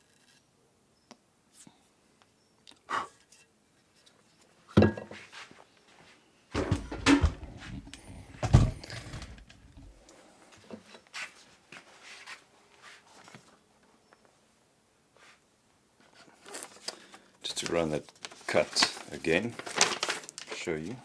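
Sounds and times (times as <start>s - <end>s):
objects knocking on workbench: 4.8s - 5.2s, 6.6s - 9.9s.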